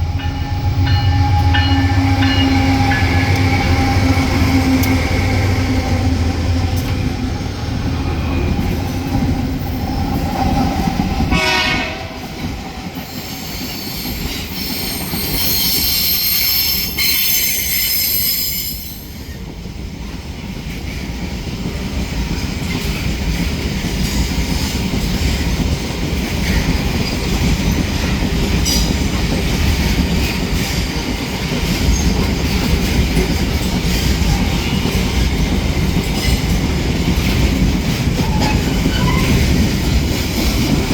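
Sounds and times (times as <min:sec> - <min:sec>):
freight train rumbling and clattering: 0:00.0 - 0:40.9
train wheels squealing: 0:13.0 - 0:19.4, 0:31.7 - 0:36.6, 0:38.2 - 0:39.7.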